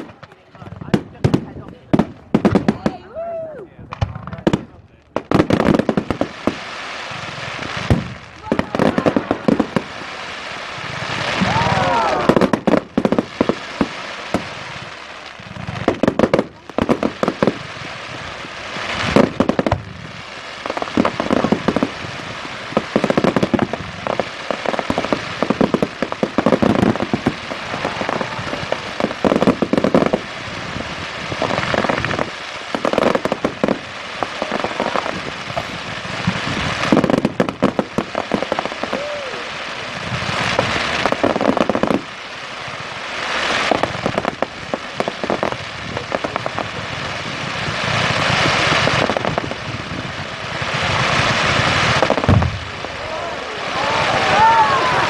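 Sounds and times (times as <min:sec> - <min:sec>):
rapid firework pops: 0:00.0 - 0:03.0, 0:03.8 - 0:53.0
fireworks shells bursting: 0:31.3 - 0:39.0.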